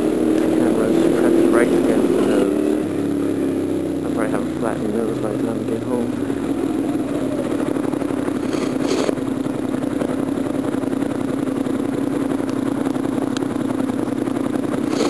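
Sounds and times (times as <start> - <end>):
motorcycle engine running: 0.0 - 15.0.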